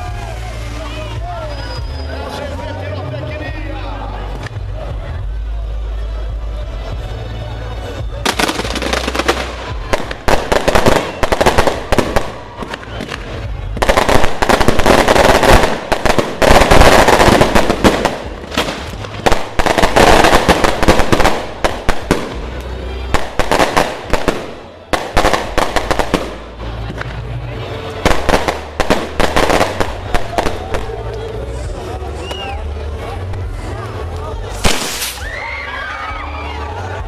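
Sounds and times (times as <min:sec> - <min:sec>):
music playing: 0:00.0 - 0:37.0
fireworks crackling bangs: 0:08.2 - 0:27.4, 0:28.0 - 0:31.2, 0:34.5 - 0:35.3.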